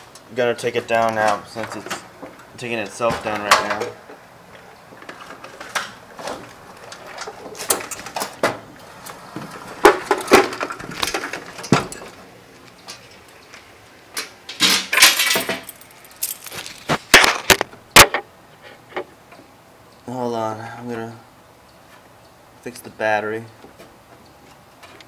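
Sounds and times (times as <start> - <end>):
metal cabinet clicks and rattles: 3.0 - 4.1, 5.0 - 8.7, 14.2 - 15.8.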